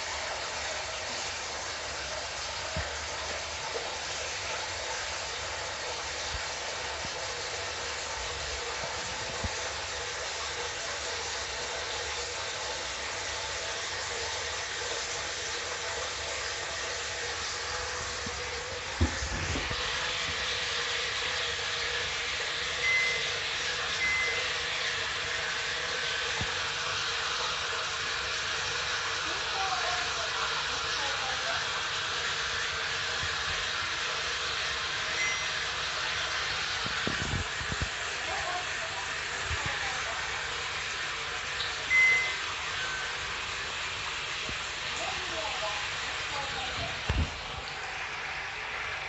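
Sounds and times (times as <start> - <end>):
water rushing into bathtub: 0.0 - 49.0
knock: 19.0 - 19.8
short high beeps: 22.8 - 23.3, 24.0 - 24.4, 35.2 - 35.5, 41.9 - 43.0.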